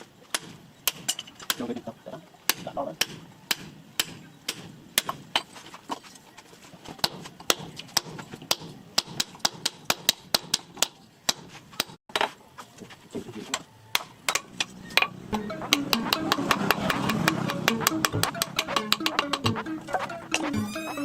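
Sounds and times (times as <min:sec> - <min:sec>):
tool striking wood: 0:14.0 - 0:19.6.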